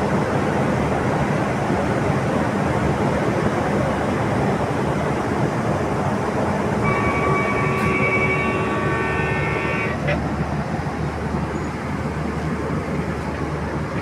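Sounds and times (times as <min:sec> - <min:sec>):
train rumbling past: 0:00.0 - 0:14.0
train horn chord: 0:06.8 - 0:10.3.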